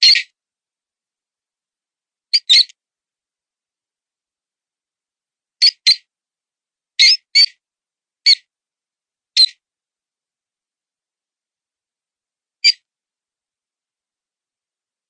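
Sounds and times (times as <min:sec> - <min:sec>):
short high mouse squeaks: 0:00.0 - 0:00.3, 0:02.3 - 0:02.7.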